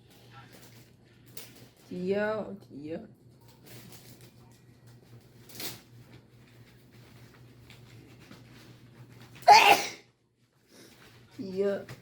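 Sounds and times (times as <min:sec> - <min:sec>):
low electrical hum: 0:00.0 - 0:12.0
loud sneeze: 0:09.4 - 0:10.0.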